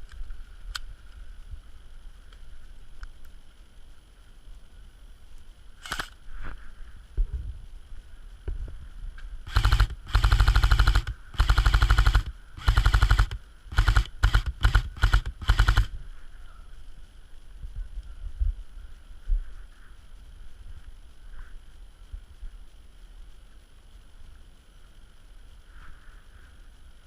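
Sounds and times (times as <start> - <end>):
airsoft rifle full-auto bursts: 5.8 - 6.2, 9.4 - 16.0.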